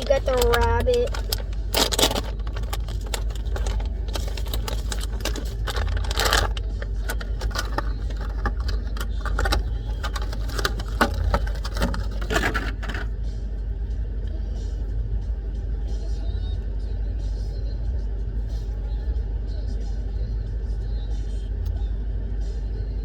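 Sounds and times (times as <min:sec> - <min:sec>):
plastic packaging crinkling: 0:00.0 - 0:13.1
low rumble: 0:00.0 - 0:23.0.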